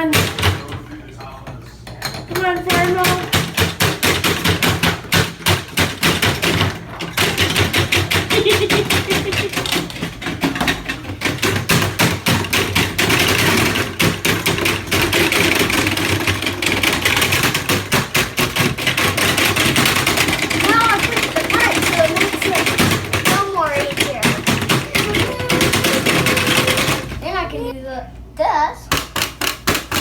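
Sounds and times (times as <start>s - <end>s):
child imitating tractor engine: 20.6s - 28.0s.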